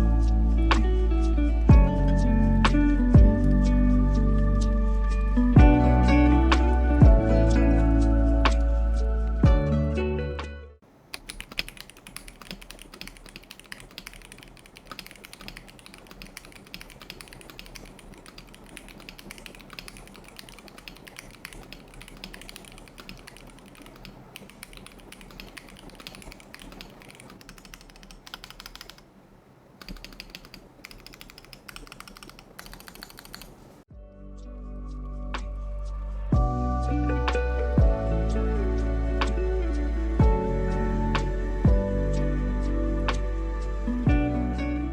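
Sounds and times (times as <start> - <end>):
background music: 0.0 - 10.8, 33.9 - 44.9
mechanical keyboard key clacks: 11.1 - 29.0, 29.8 - 33.6.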